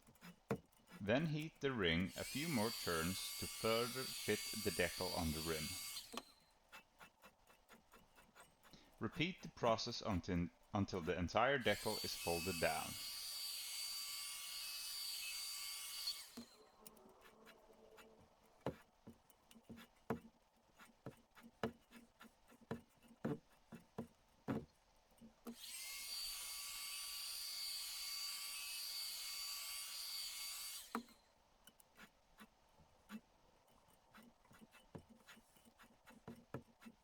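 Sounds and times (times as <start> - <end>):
hot air gun blowing: 2.1 - 6.2, 11.6 - 13.1.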